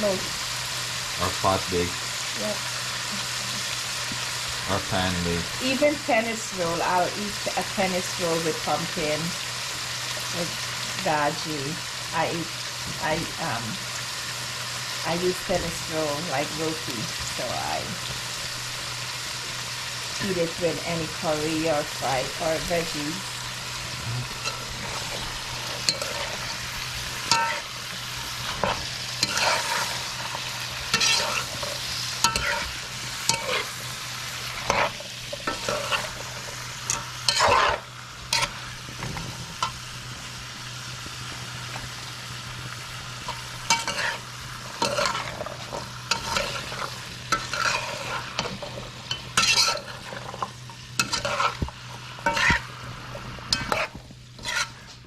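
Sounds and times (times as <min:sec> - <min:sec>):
pumpkin sizzling in oil: 0:00.0 - 0:55.0
spoon scraping a pot: 0:25.8 - 0:26.6, 0:27.2 - 0:27.6, 0:28.4 - 0:30.3, 0:30.9 - 0:32.7, 0:33.3 - 0:33.7, 0:34.6 - 0:36.2, 0:36.9 - 0:38.6, 0:43.3 - 0:44.2, 0:44.8 - 0:52.7, 0:53.5 - 0:55.0.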